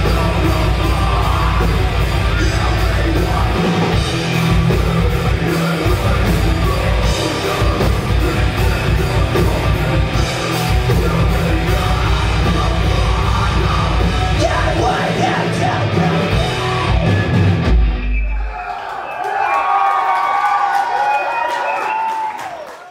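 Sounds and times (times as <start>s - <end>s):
harsh yelled vocals: 0.0s - 17.6s
fast double-bass drumming: 0.0s - 18.0s
distorted guitars and bass: 0.0s - 18.3s.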